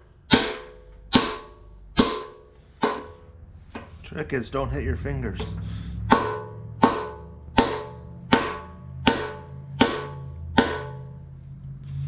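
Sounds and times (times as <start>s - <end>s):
hammer striking steel: 0.0s - 4.0s, 5.4s - 11.3s.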